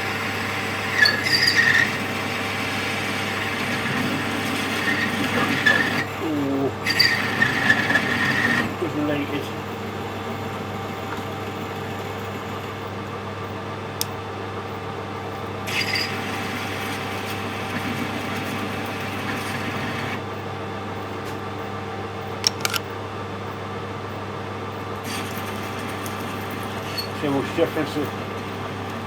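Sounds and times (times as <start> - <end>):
metal lathe running: 0.0 - 13.4, 15.4 - 20.4, 25.0 - 29.0
tool scraping steel: 0.9 - 2.0, 15.7 - 16.3.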